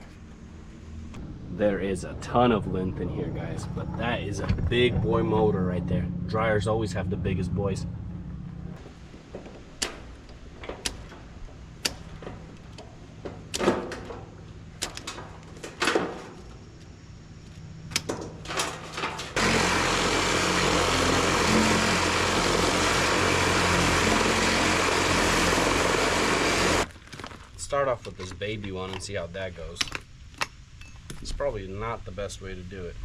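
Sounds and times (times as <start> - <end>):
loud steady machine noise: 19.4 - 26.9.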